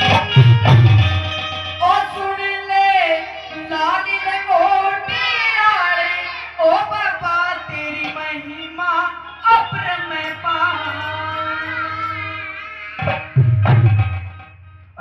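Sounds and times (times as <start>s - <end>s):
sharp drum strokes: 0.0s - 1.5s.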